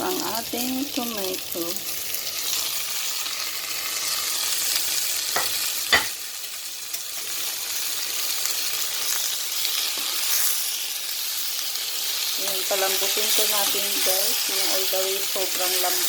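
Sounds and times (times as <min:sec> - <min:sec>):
food sizzling in oil: 0:00.0 - 0:16.0
utensil clacking on pan: 0:05.4 - 0:06.2.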